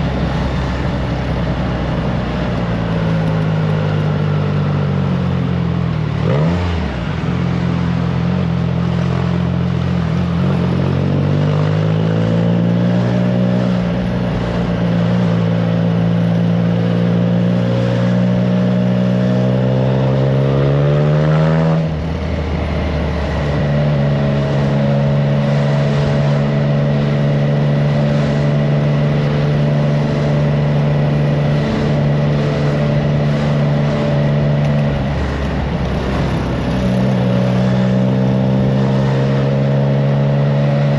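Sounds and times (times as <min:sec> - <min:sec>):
motorcycle engine revving: 0:00.0 - 0:40.9
wind noise on microphone: 0:21.8 - 0:39.6.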